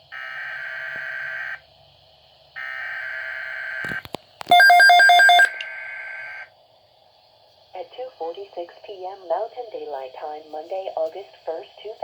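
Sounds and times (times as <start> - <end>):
harsh buzzing data tones: 4.5 - 5.5
pulsing alarm beep: 4.5 - 5.5.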